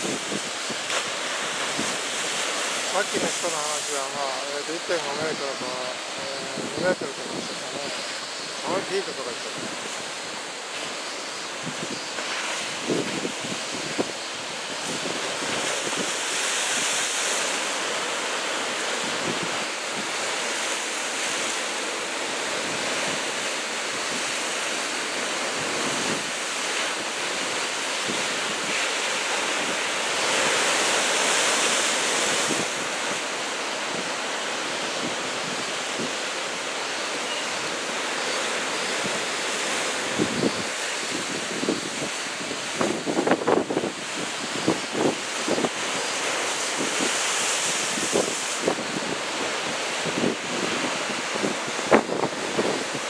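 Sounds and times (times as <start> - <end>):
wind buffeting microphone: 0.0 - 0.9, 11.5 - 17.0, 39.0 - 53.0
surf breaking on shore: 0.0 - 53.0.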